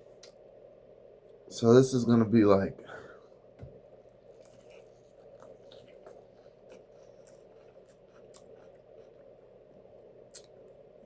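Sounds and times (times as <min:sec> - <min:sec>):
steady low hum: 0:00.0 - 0:11.0
person chewing food: 0:03.9 - 0:10.8
mouth clicks and smacks: 0:10.3 - 0:10.6.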